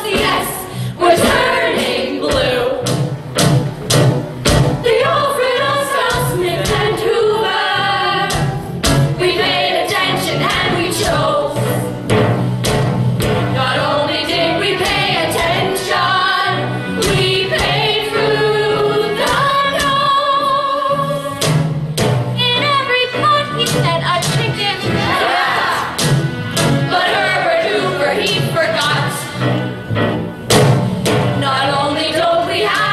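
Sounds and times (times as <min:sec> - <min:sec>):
chorus of voices singing: 0:00.0 - 0:03.1, 0:04.5 - 0:12.0, 0:13.2 - 0:21.4, 0:24.7 - 0:30.0, 0:31.3 - 0:32.9.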